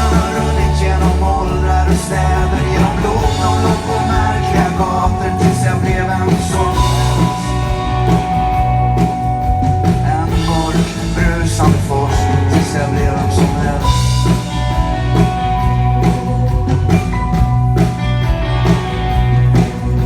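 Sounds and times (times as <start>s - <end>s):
bass guitar: 0.0s - 20.0s
drum kit beat: 0.0s - 20.0s
electric guitars: 0.0s - 20.0s.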